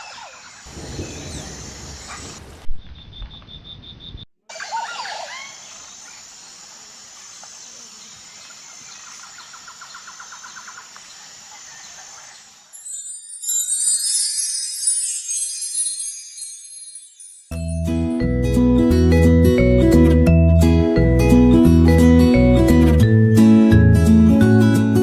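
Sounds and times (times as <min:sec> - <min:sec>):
birdsong: 0:00.0 - 0:06.4
high insect drone: 0:05.3 - 0:13.5.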